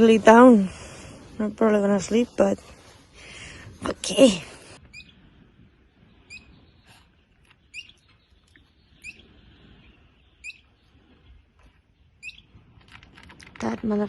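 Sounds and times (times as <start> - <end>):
small animal rising chirp: 6.2 - 6.8, 8.9 - 9.3.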